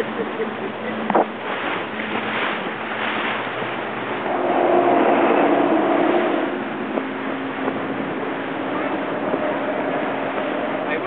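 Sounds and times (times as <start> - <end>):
motorboat engine hum: 0.0 - 11.0
rushing water: 0.0 - 11.0
wind: 0.0 - 11.0.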